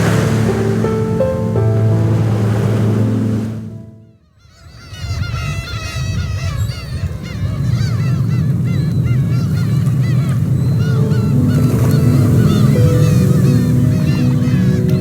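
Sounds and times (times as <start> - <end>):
steady low rumble: 0.0 - 4.0
flock of birds calling: 4.0 - 15.0.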